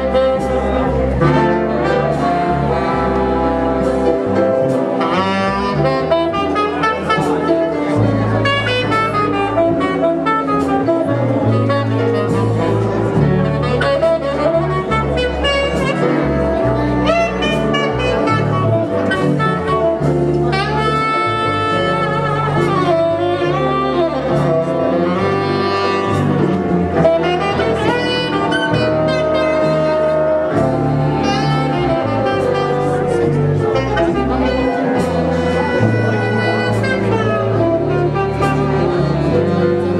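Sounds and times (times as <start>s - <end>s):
saxophone melody: 0.0s - 39.9s
walking bass line: 0.0s - 39.9s.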